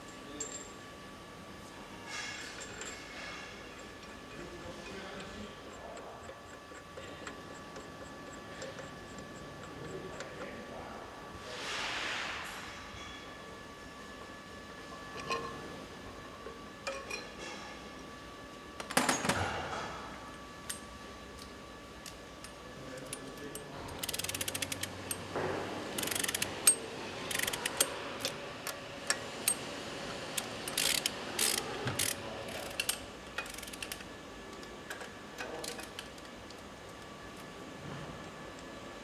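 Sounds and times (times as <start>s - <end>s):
ratchet wrench clicking: 23.0s - 25.3s, 26.0s - 28.4s, 30.4s - 34.1s
tools clanking on steel: 23.0s - 29.6s.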